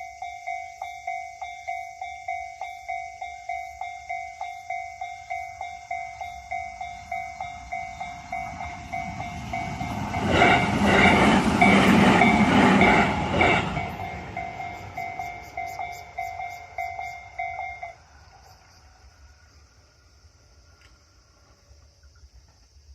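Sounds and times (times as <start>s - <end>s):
train wheels clattering: 0.0s - 17.9s
level crossing bells ringing: 0.0s - 18.0s.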